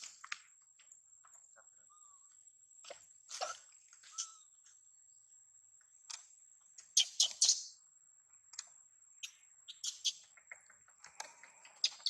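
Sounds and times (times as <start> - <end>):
baby monkey squeaking: 3.3 - 4.5, 7.0 - 7.7, 9.7 - 10.3.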